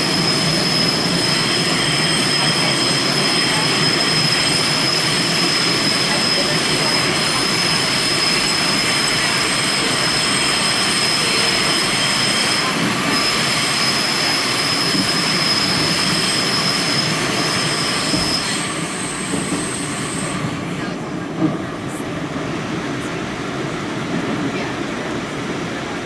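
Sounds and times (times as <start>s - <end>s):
high wheel squeal: 0.0s - 20.4s
subway car rumble and rail noise: 0.0s - 26.0s.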